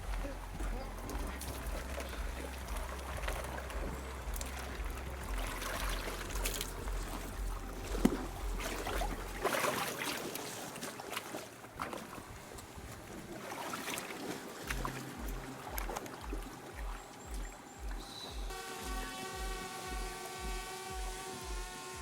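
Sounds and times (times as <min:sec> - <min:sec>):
pulsing low rumble: 0:00.0 - 0:09.6, 0:14.7 - 0:22.0
water splashing and trickling: 0:00.0 - 0:22.0.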